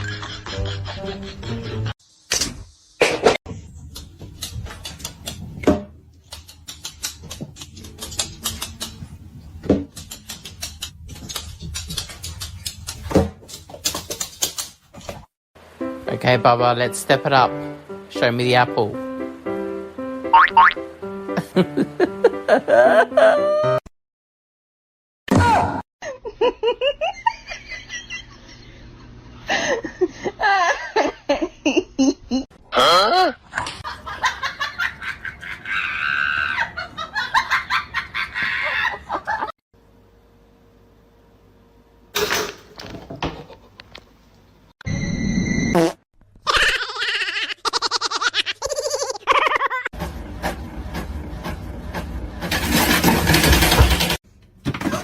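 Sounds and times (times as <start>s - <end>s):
high-pitched laughter: 0.0s - 2.0s, 21.4s - 23.8s, 29.7s - 39.5s, 46.4s - 49.9s
rapid irregular clicking: 6.2s - 9.0s, 9.9s - 13.0s.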